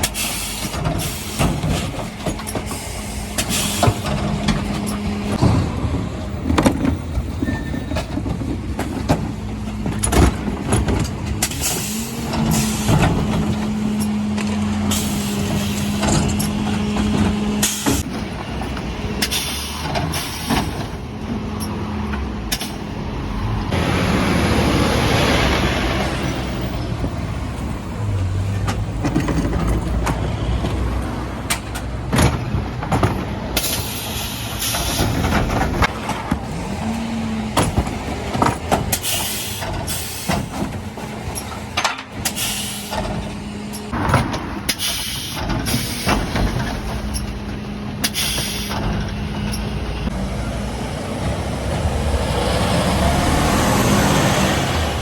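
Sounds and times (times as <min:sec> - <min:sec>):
refuse truck engine humming: 0:00.0 - 0:55.0
bins knocking and banging: 0:03.7 - 0:14.7, 0:28.4 - 0:30.9, 0:31.5 - 0:33.9.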